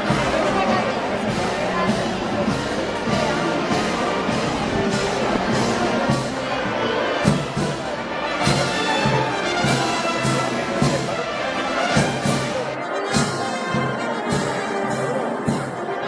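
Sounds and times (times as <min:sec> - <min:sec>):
drum and cymbal beat: 0:00.0 - 0:15.9
brass band playing: 0:00.0 - 0:16.0
trumpets and trombones: 0:00.0 - 0:16.0.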